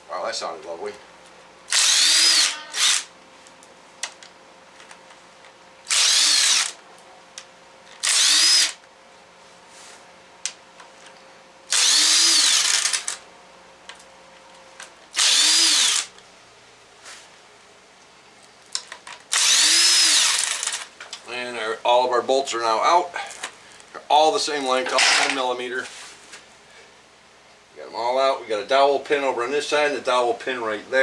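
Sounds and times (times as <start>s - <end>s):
power tool motor whine: 1.7s - 3.1s, 5.9s - 6.8s, 8.0s - 8.8s, 11.7s - 13.2s, 15.2s - 16.1s, 19.3s - 20.9s.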